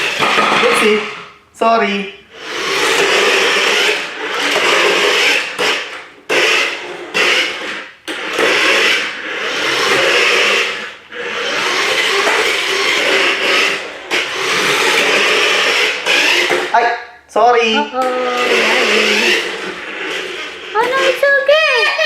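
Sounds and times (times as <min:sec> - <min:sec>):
toy car motor whirring: 0:00.0 - 0:01.4, 0:02.3 - 0:16.8, 0:17.8 - 0:22.0.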